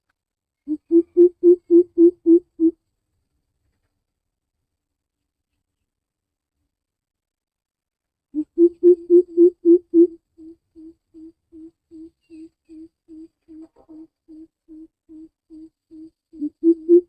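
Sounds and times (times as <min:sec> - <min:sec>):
bird deep hollow hoop call: 0:00.7 - 0:02.8, 0:08.4 - 0:17.0.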